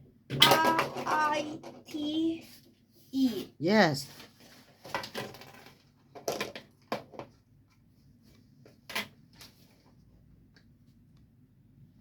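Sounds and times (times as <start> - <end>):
small objects knocking: 0.3 - 1.8.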